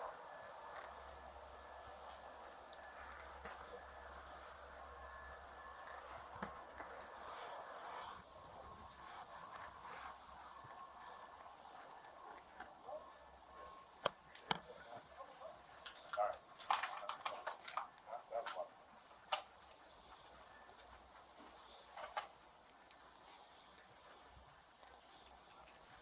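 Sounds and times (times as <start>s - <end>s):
crickets trilling: 0.0s - 26.0s
sharp clicks: 14.0s - 14.7s, 19.3s - 19.8s.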